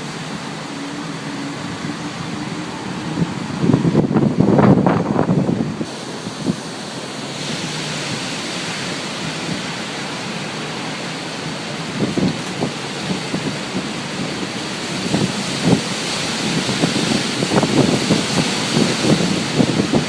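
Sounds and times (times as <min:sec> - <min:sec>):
wind and rain hissing: 0:00.0 - 0:20.0
wind gusts buffeting microphone: 0:00.0 - 0:20.0.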